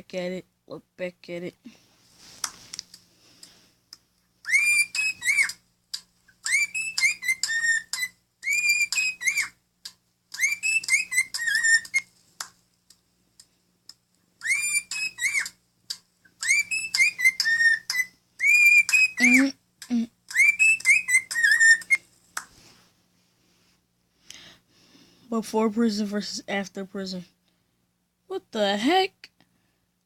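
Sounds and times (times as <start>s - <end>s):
person whistling a tune: 4.5s - 5.6s, 6.5s - 9.5s, 10.4s - 12.0s, 14.4s - 15.5s, 16.4s - 19.5s, 20.3s - 22.0s.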